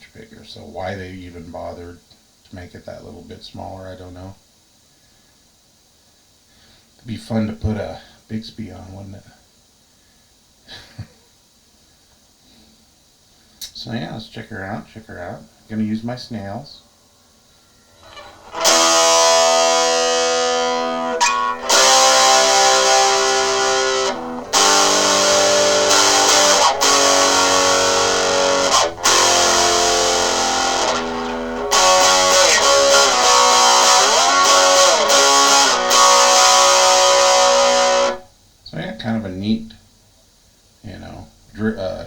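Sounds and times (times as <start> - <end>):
distorted electric guitar: 17.9 - 38.3.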